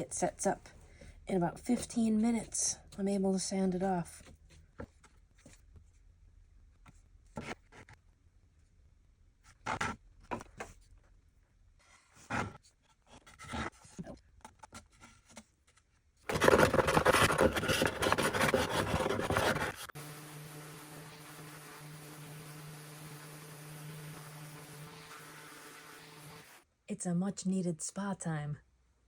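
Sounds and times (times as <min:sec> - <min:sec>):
scrapes on wooden cutting board: 0:16.3 - 0:19.9
power sander on wood: 0:16.3 - 0:26.6.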